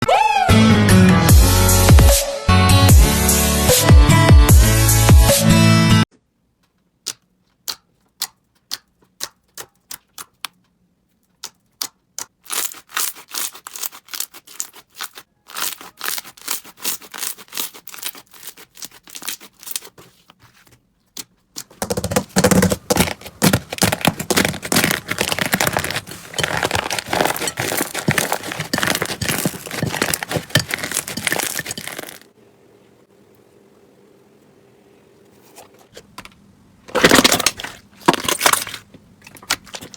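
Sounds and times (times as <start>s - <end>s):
slime clicking and crackling: 11.3s - 20.0s, 21.2s - 32.2s.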